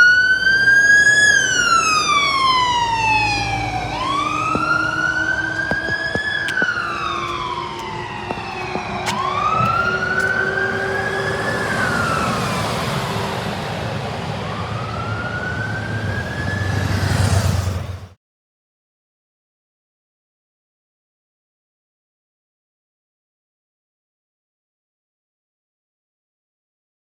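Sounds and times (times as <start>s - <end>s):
fire truck siren wailing: 0.0s - 18.0s.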